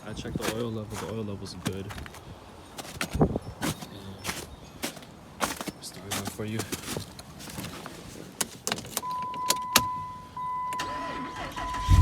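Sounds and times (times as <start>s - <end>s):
dashboard warning chime: 9.0s - 12.0s.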